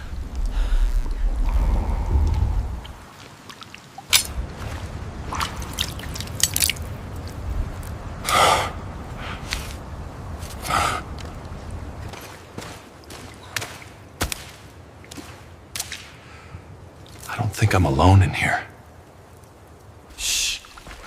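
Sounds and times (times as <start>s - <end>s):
low cave rumble: 0.0s - 21.0s.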